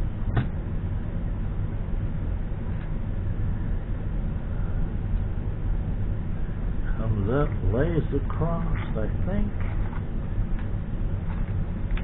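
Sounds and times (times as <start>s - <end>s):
low background rumble: 0.0s - 12.0s.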